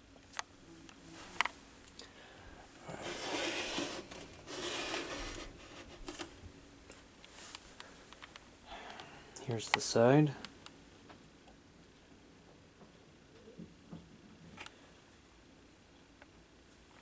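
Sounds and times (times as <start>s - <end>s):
rubbing and scraping: 2.6s - 6.5s.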